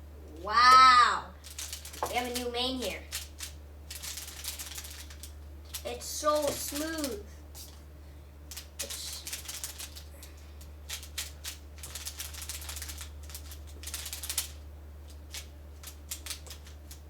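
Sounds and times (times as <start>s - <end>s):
puzzle cube clicking as turned: 10.9s - 14.6s, 15.3s - 16.7s.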